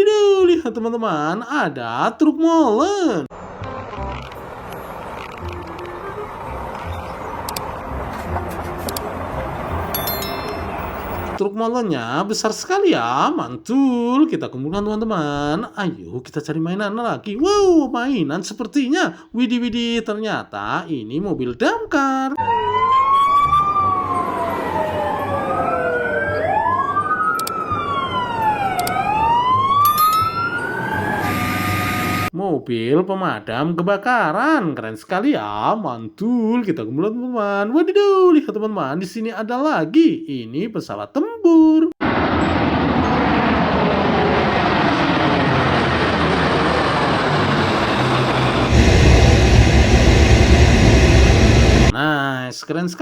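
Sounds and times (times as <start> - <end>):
fire engine siren wailing: 4.4 - 11.4, 22.4 - 32.3, 42.0 - 51.9
fighter jet engine passing: 42.0 - 51.9.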